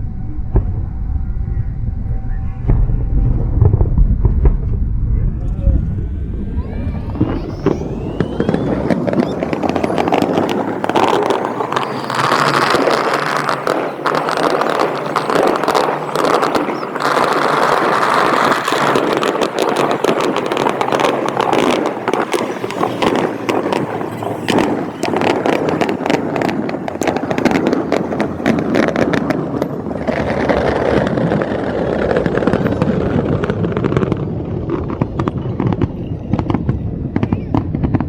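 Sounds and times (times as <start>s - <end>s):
low rumble: 0.0s - 12.0s
fireworks crackling: 2.2s - 38.0s.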